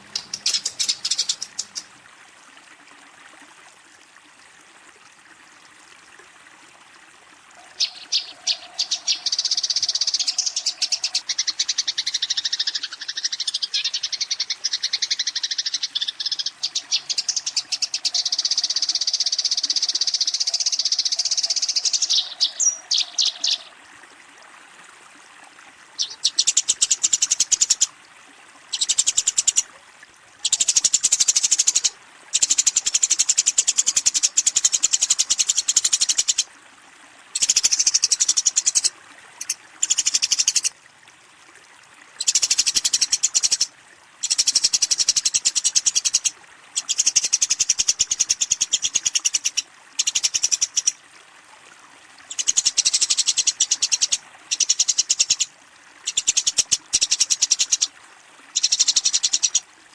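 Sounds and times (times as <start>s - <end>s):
sparrows chattering: 0.1s - 1.9s.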